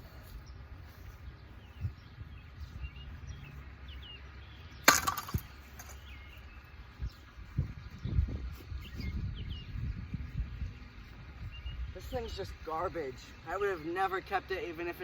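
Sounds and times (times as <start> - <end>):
rock crashing into ceiling fan: 4.9 - 6.0.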